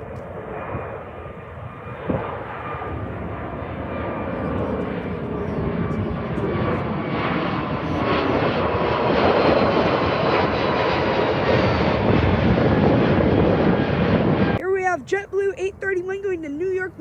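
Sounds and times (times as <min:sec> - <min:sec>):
faint engine whine: 0:00.0 - 0:17.0
jet engines roaring: 0:00.0 - 0:17.0.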